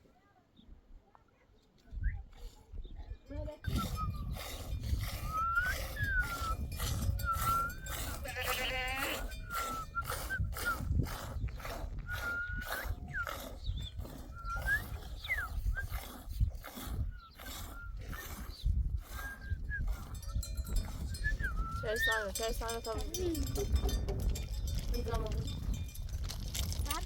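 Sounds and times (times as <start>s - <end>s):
sheep bleating: 8.2s - 9.4s.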